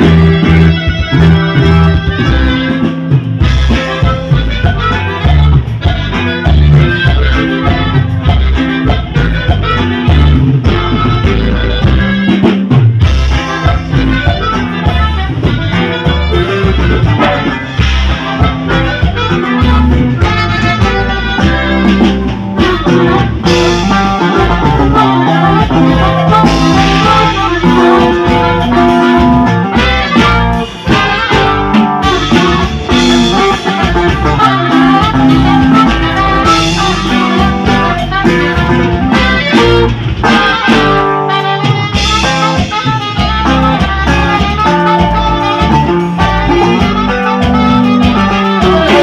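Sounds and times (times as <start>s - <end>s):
loud cumbia dance music: 0.0s - 49.0s.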